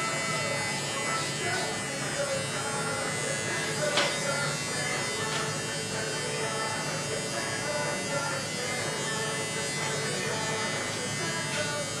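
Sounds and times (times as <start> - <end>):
electric hair clippers buzzing: 0.0 - 12.0.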